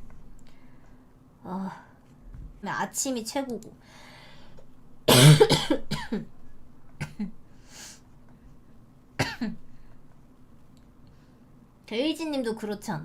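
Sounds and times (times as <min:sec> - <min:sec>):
woman coughing: 0:05.1 - 0:06.3, 0:07.0 - 0:07.3, 0:09.2 - 0:09.6.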